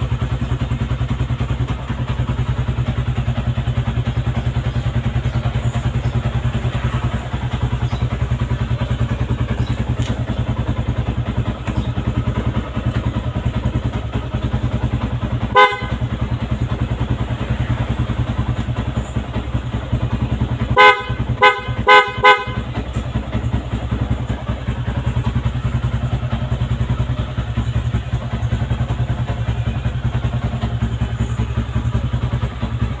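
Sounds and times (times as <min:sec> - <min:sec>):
motorcycle idling loud low throb: 0:00.0 - 0:33.0
motorcycle horn beeping: 0:07.5 - 0:32.9.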